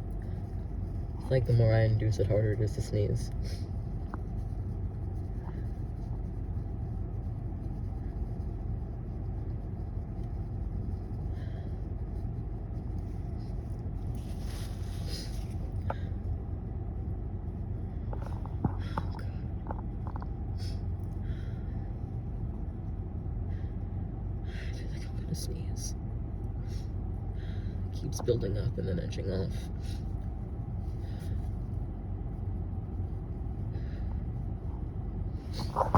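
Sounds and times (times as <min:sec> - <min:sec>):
steady low rumble: 0:00.0 - 0:35.9
sniffling through congested nose: 0:14.2 - 0:16.2.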